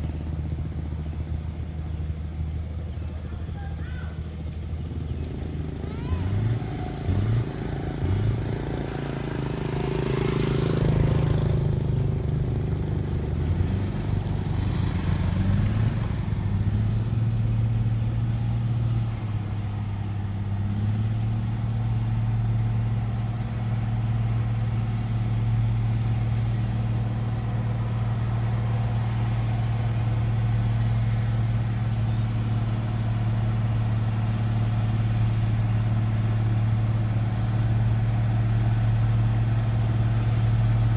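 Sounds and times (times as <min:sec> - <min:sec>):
heavy diesel engine running: 0:00.0 - 0:40.9.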